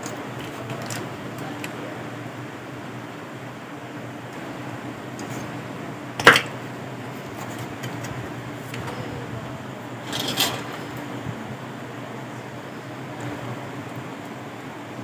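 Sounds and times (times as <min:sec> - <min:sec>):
steady low hum: 0:00.0 - 0:15.0
metal tools clacking on workbench: 0:10.1 - 0:10.8.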